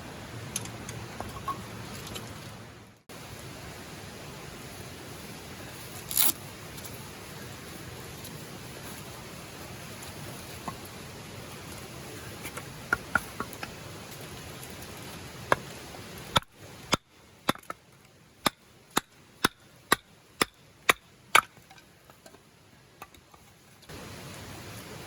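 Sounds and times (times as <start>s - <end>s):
firewood being chopped: 12.5s - 13.8s, 15.4s - 17.8s, 18.4s - 22.3s.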